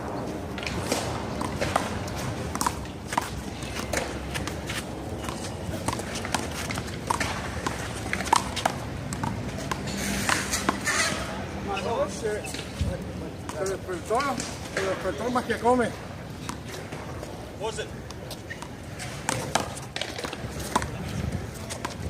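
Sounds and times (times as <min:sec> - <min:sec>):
handball slapping: 0:05.2 - 0:10.8.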